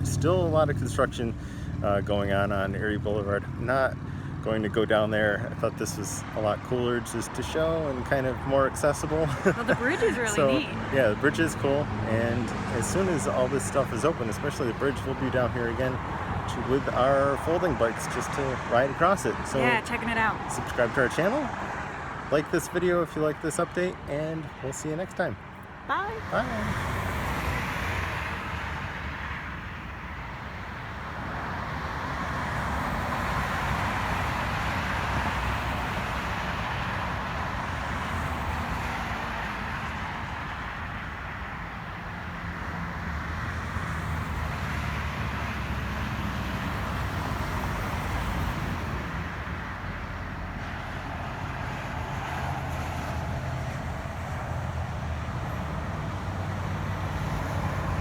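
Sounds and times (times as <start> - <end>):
low traffic rumble: 0.0 - 58.0.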